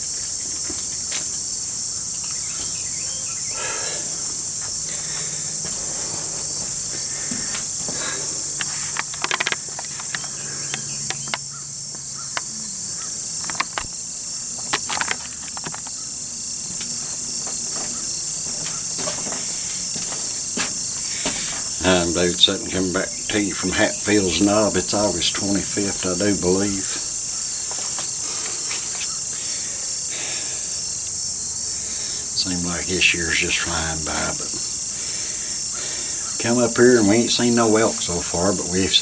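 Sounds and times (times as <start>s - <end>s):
insects trilling: 0.0s - 39.0s
sharp clicks: 8.6s - 11.5s, 13.4s - 14.0s.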